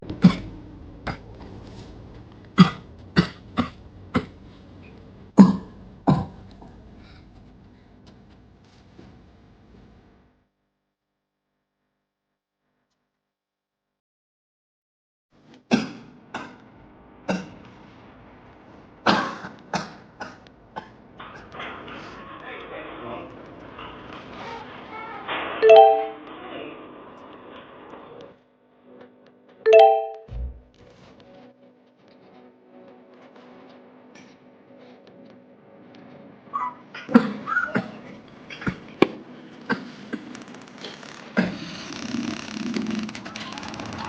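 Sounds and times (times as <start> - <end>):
person coughing: 2.6 - 4.4.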